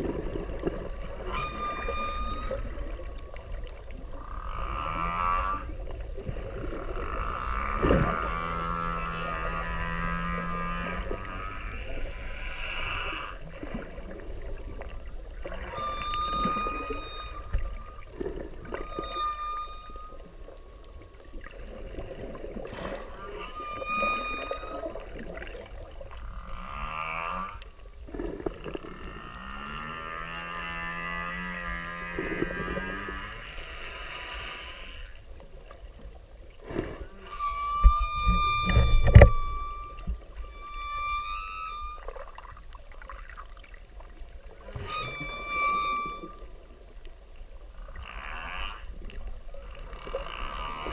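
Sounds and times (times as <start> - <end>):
whale calls moaning: 0.0 - 35.2, 36.7 - 42.7, 43.6 - 46.8, 47.7 - 50.9
low underwater rumble: 0.0 - 50.9
faint clicks: 38.3 - 50.9.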